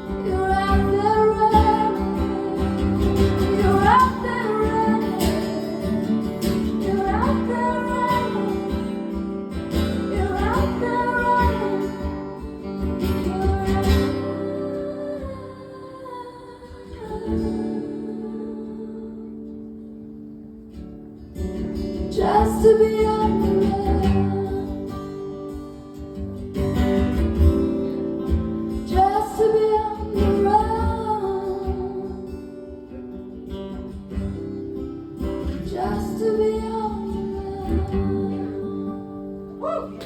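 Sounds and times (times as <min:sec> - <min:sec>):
person singing: 0:00.0 - 0:19.8, 0:22.1 - 0:25.2, 0:28.2 - 0:32.4, 0:35.4 - 0:40.0
acoustic guitar playing: 0:00.0 - 0:40.0.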